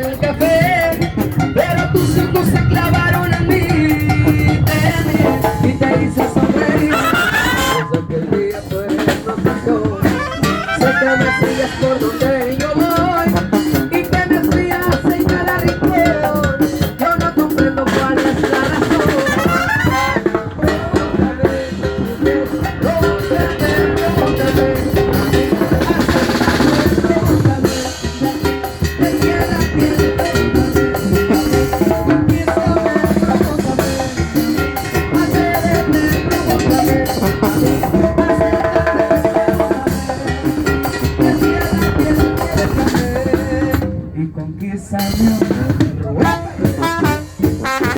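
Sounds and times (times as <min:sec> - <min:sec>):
drum snare and cymbal rhythm: 0:00.0 - 0:47.9
brass and clarinet melody: 0:03.9 - 0:08.5, 0:09.4 - 0:13.4, 0:18.3 - 0:21.1, 0:33.1 - 0:39.6, 0:45.8 - 0:47.9.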